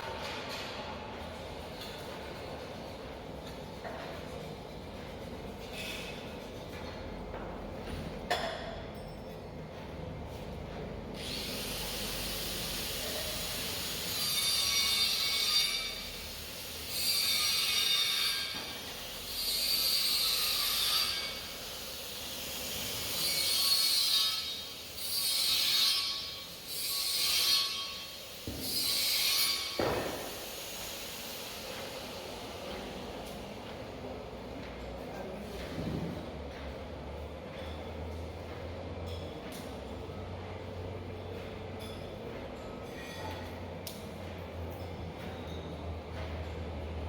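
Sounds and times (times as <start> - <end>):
machine hissing: 11.2 - 17.6, 27.8 - 33.2.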